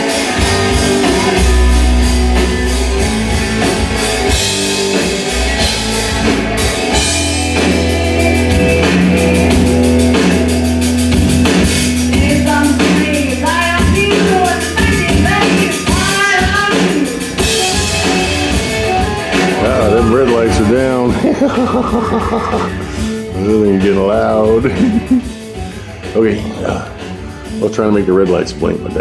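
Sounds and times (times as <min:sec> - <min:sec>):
loud rock music with singing: 0:00.0 - 0:27.7
heavy steady bass: 0:18.0 - 0:23.0.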